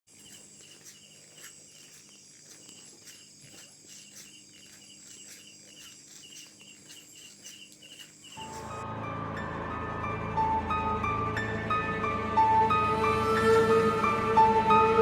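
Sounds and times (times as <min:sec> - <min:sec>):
insects chirping: 0:00.1 - 0:08.8.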